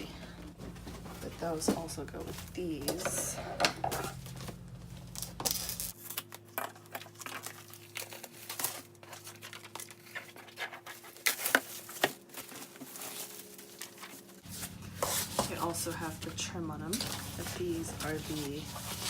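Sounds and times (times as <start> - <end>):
fabric bags crinkling and rustling: 4.0 - 19.0.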